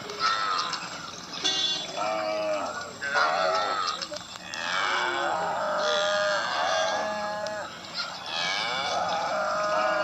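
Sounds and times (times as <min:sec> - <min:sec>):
cow mooing: 0:03.6 - 0:10.0.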